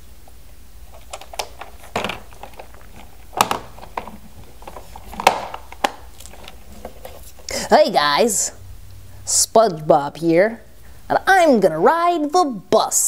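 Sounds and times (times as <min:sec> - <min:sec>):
plastic toys clicking and knocking: 0:01.0 - 0:07.1.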